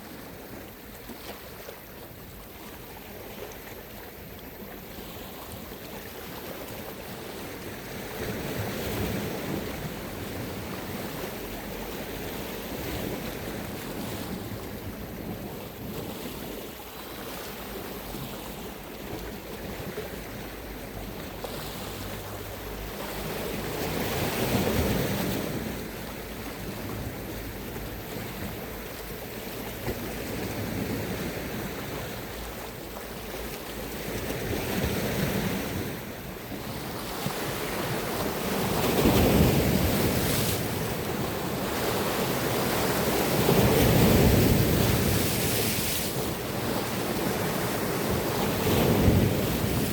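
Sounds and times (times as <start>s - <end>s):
sea waves breaking on shore: 0.0s - 49.9s
wind buffeting microphone: 34.0s - 49.9s.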